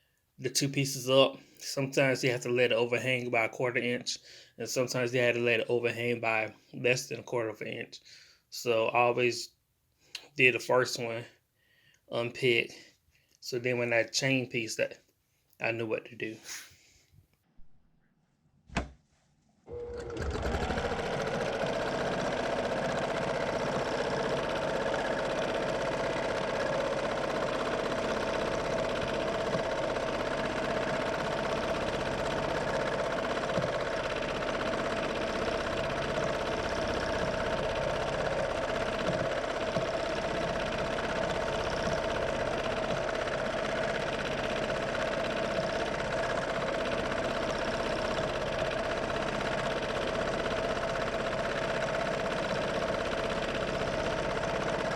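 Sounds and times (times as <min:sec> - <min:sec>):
sewing machine running: 0:19.7 - 0:54.9.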